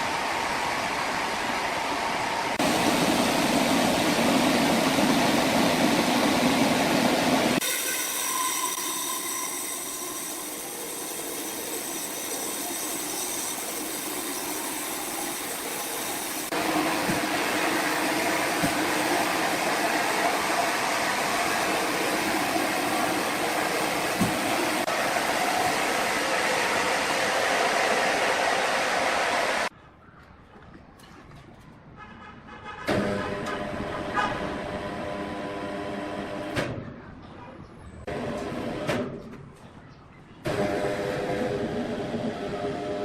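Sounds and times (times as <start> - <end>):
sawmill machinery humming: 0.0 - 29.7, 40.5 - 43.0.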